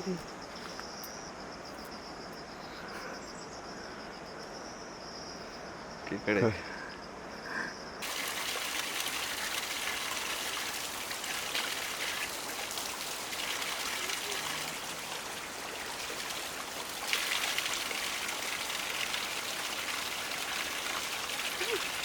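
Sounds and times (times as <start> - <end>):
running water rushing: 8.0 - 22.0.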